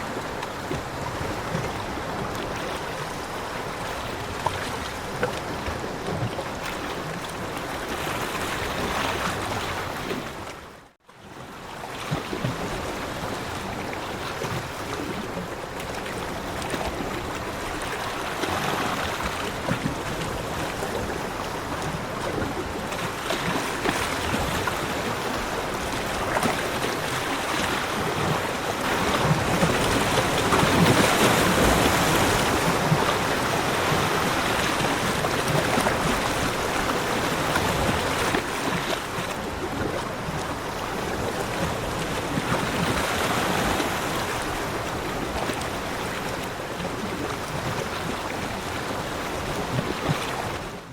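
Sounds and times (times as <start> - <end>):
waves breaking on rocks: 11.8 - 50.9.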